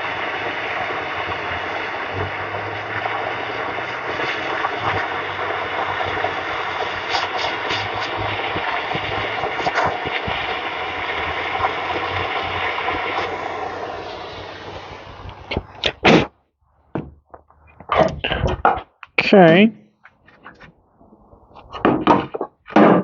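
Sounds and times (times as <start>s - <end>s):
hand torch hissing: 0.0s - 16.3s
sharp knocks: 16.9s - 19.0s, 21.7s - 23.0s.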